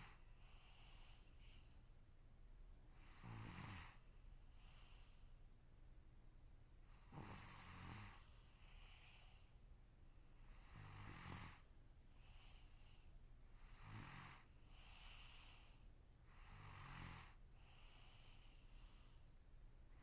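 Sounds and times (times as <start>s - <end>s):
soft breaths: 0.0s - 5.8s, 6.7s - 20.0s
person snoring with low rattle: 3.0s - 4.0s, 7.0s - 9.3s, 10.5s - 11.7s, 13.6s - 18.4s.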